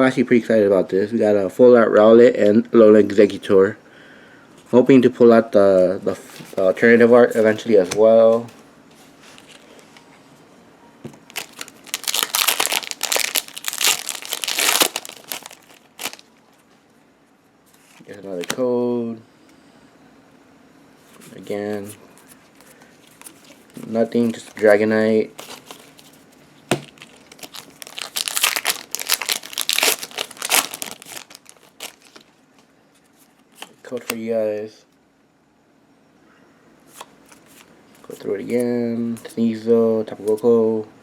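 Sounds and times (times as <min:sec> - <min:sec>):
foil wrapper tearing: 0:11.3 - 0:16.3, 0:27.0 - 0:32.2
foil wrapper crinkling: 0:11.3 - 0:16.4, 0:26.8 - 0:32.3.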